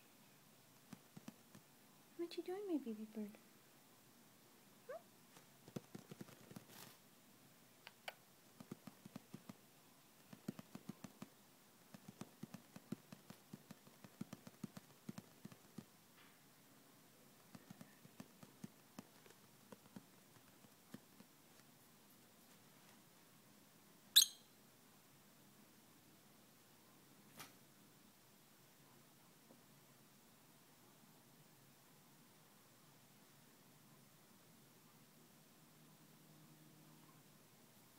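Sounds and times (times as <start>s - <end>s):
bird feet pattering on hard surface: 5.3s - 7.0s, 10.3s - 15.9s.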